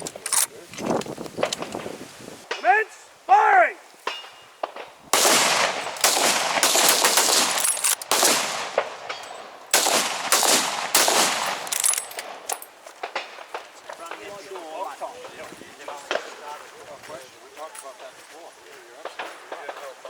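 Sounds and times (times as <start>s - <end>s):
rifle shots with ringing echo: 4.1s - 13.7s.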